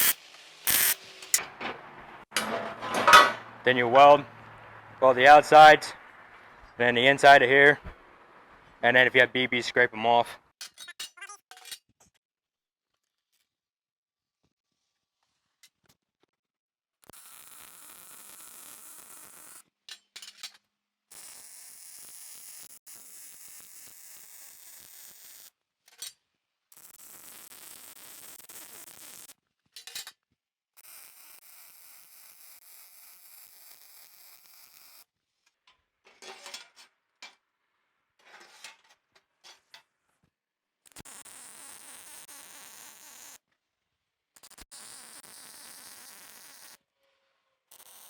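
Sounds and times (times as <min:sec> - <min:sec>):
welder hissing: 0:00.0 - 0:04.2.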